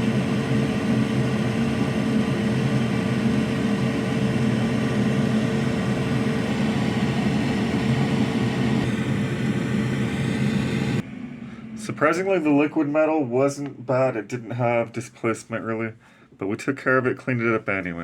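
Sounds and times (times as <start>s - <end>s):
small electric fan whirring: 0.0s - 13.9s.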